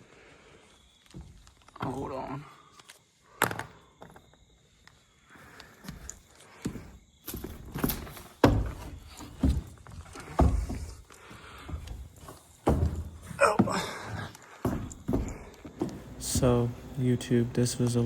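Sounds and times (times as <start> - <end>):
scuffing: 6.6 - 17.1
thumps and knocks: 6.7 - 16.9.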